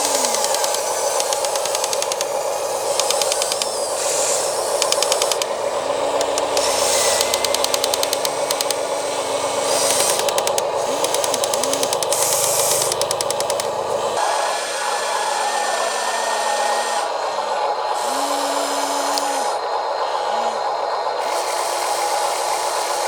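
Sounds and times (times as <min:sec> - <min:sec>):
rapid clicking: 0:00.0 - 0:14.2
small electric motors whirring: 0:00.0 - 0:14.2, 0:18.0 - 0:19.6.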